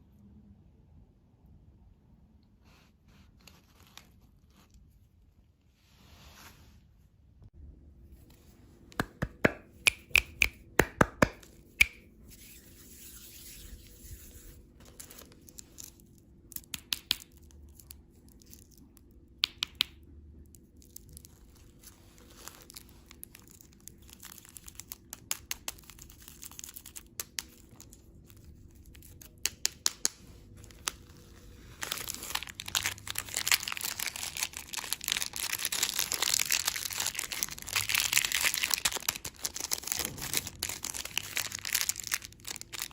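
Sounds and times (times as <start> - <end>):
plastic packaging crinkling and tearing: 13.6 - 19.0, 20.5 - 42.9.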